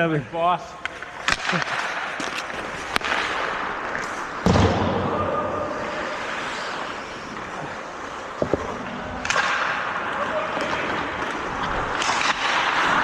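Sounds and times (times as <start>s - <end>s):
hissing skate scrape: 0.9s - 13.0s
loud thud with deep boom: 4.4s - 5.0s.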